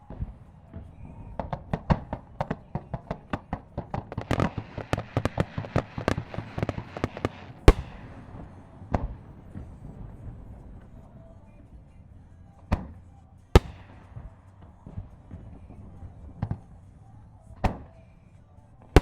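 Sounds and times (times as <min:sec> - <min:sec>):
fireworks booming: 0:00.0 - 0:11.2, 0:13.6 - 0:16.8
fireworks crackling: 0:00.0 - 0:11.4, 0:13.6 - 0:16.8.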